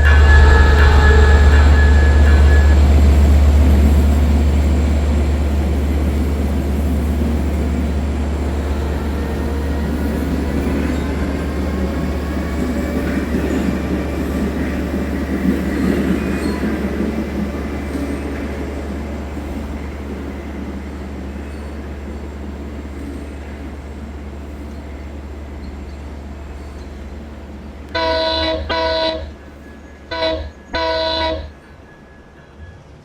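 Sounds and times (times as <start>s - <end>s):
train rumbling away: 0.0s - 33.0s.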